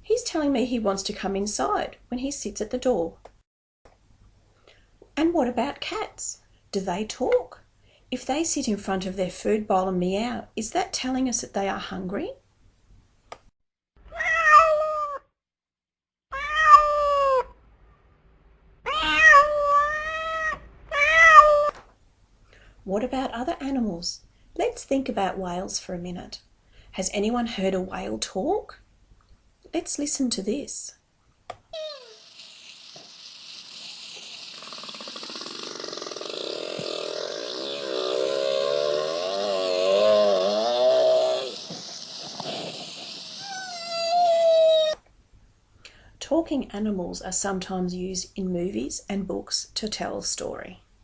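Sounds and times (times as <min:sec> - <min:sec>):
cat meowing: 0:14.1 - 0:15.2, 0:16.3 - 0:17.5, 0:18.9 - 0:21.7, 0:31.8 - 0:32.2, 0:43.4 - 0:45.0
underwater hiss: 0:32.0 - 0:43.5
whale calls: 0:36.1 - 0:41.8.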